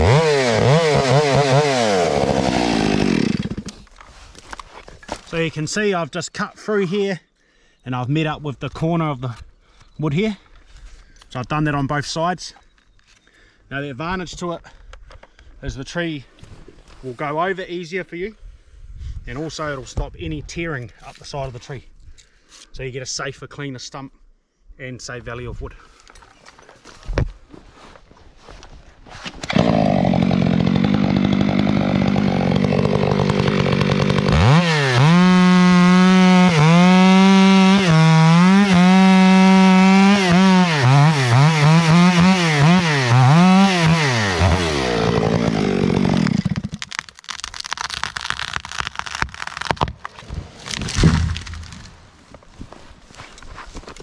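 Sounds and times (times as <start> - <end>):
chainsaw running: 0.0 - 3.9, 29.4 - 49.8
wood crackling: 43.9 - 54.0
tree falling thud: 49.2 - 52.1.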